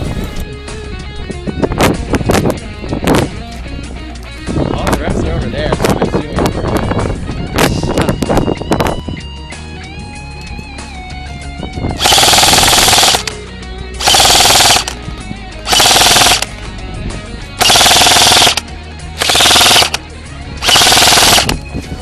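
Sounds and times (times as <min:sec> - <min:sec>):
airsoft gun bursts of fire: 0:12.0 - 0:13.4, 0:14.0 - 0:15.0, 0:15.7 - 0:16.5, 0:17.6 - 0:18.6, 0:19.2 - 0:20.0, 0:20.6 - 0:21.6.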